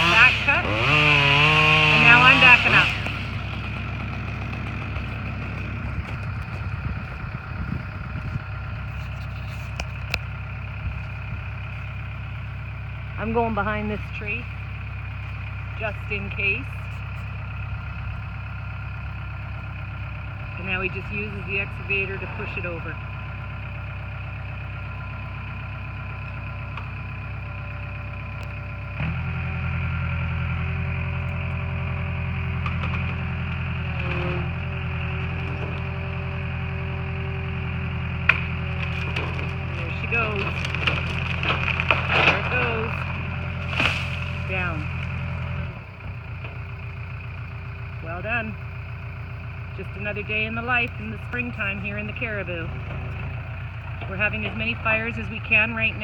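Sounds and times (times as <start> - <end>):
chainsaw whine: 0.0 - 17.7, 19.1 - 46.7
diesel engine idling: 0.0 - 56.0.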